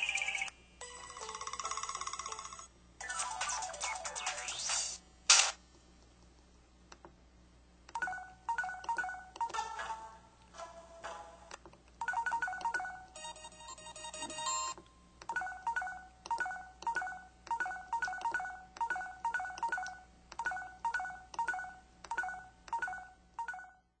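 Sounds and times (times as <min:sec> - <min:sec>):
beeping phone alert: 0:00.0 - 0:03.3, 0:12.0 - 0:23.8.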